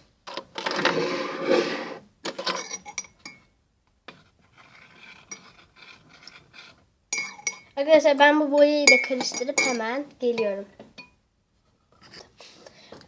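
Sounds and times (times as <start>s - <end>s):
spoon scraping in dish: 4.1s - 7.8s.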